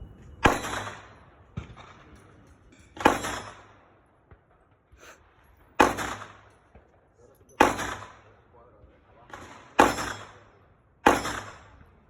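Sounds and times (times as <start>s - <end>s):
gunshots with echo: 0.4s - 2.2s, 3.0s - 3.8s, 5.2s - 6.5s, 7.6s - 8.4s, 9.3s - 10.4s, 11.0s - 11.8s.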